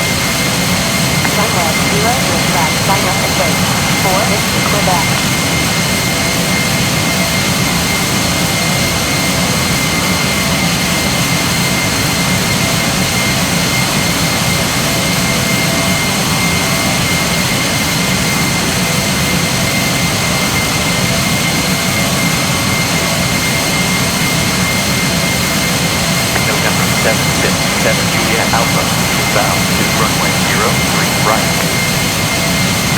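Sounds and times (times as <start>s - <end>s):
jet engines running: 0.0s - 32.9s.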